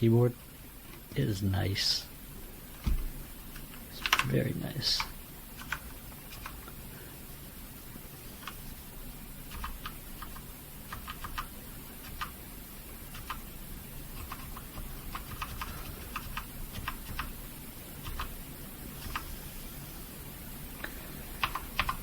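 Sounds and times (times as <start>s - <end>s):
faint low hum: 0.0s - 22.0s.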